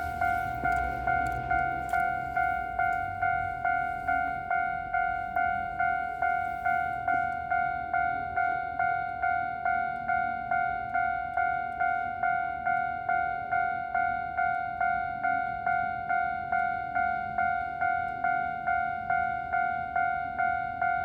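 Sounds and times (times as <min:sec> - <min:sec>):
level crossing warning bell: 0:00.0 - 0:21.0.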